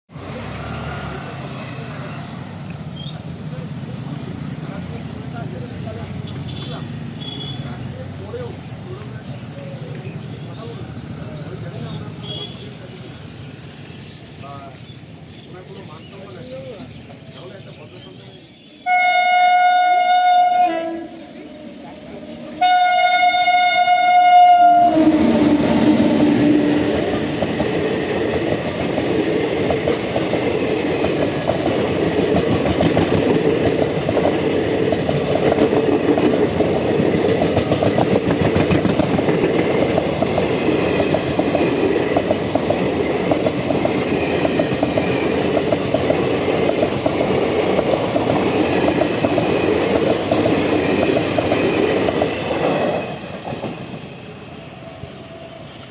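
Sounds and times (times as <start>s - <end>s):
train wheels clattering on rails: 0.4s - 17.6s, 25.1s - 54.4s
train horn: 18.8s - 21.5s, 22.6s - 27.0s.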